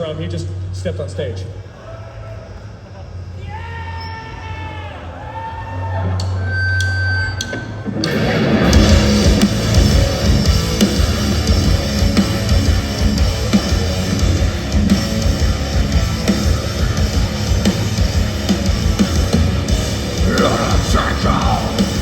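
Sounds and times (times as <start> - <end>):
heavy metal band playing live: 7.9 - 22.0
rapid kick drum beats: 8.6 - 22.0.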